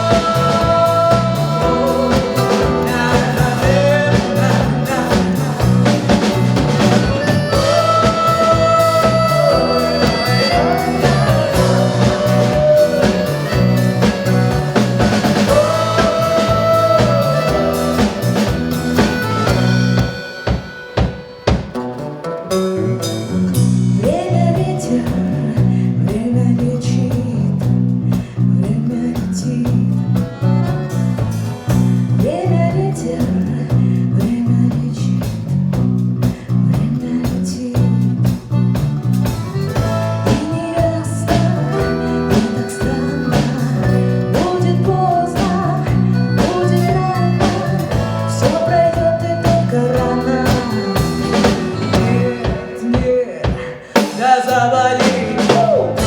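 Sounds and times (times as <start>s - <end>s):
button accordion: 0.0s - 22.0s, 30.0s - 31.7s, 39.1s - 53.0s
bass guitar: 0.0s - 56.0s
drum kit: 0.0s - 56.0s
guitar: 0.0s - 56.0s.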